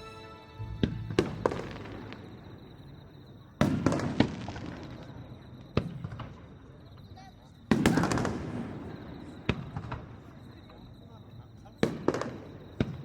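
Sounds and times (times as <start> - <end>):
fireworks bursting: 0.0 - 6.4.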